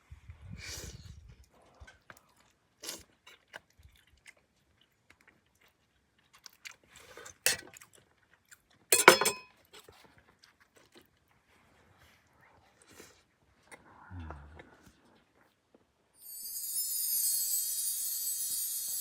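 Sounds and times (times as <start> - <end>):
person chewing and crunching: 2.0 - 8.9, 9.6 - 11.3.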